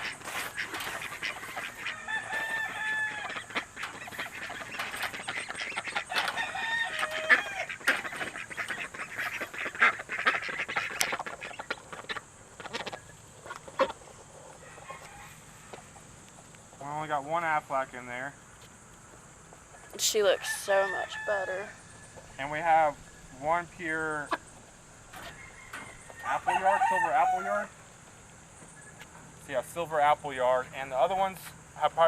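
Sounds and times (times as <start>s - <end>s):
ducks quacking: 0.0s - 15.3s, 22.3s - 27.8s.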